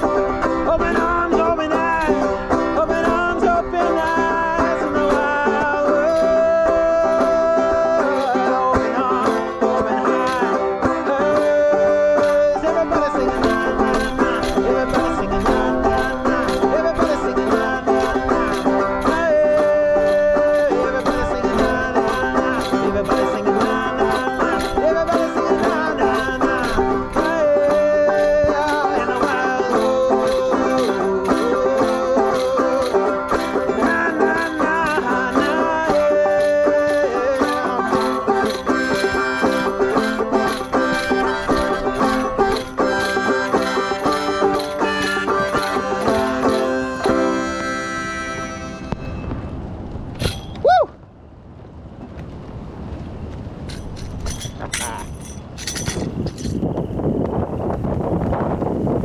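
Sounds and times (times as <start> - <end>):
banjo plucking: 0.0 - 49.0.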